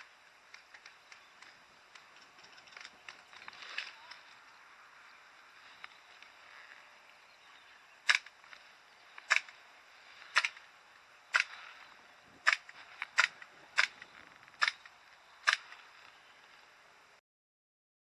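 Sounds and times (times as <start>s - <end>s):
airsoft gun shots: 9.2s - 9.6s, 10.3s - 10.6s, 11.3s - 11.6s, 12.4s - 15.8s.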